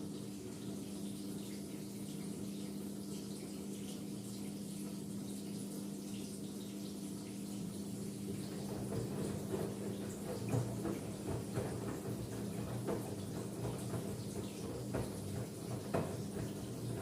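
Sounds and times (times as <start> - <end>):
washing machine humming: 0.0 - 17.0
water running: 0.0 - 17.0
soft knocks from washer drum: 7.7 - 17.0.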